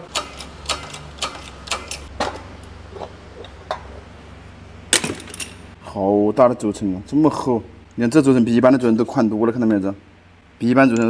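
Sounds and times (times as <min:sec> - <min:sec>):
sharp metal clanks: 0:04.9 - 0:05.7.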